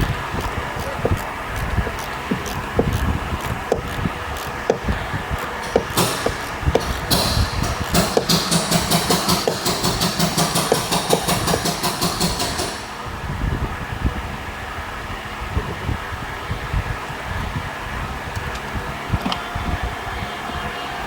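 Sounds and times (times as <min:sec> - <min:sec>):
fast mechanical clicking: 0:00.0 - 0:13.2
low rumble and hum: 0:00.0 - 0:21.0.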